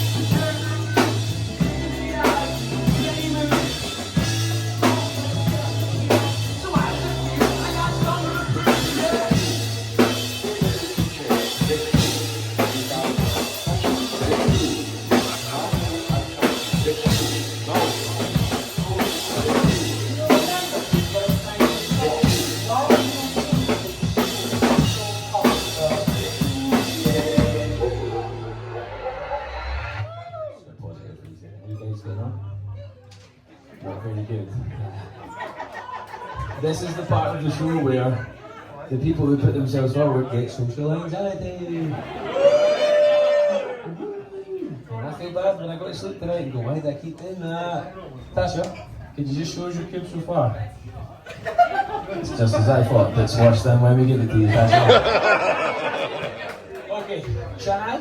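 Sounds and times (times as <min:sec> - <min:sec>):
live rock band instrumental: 0:00.0 - 0:30.0
drum kit beating: 0:00.0 - 0:30.2, 0:48.4 - 0:57.7.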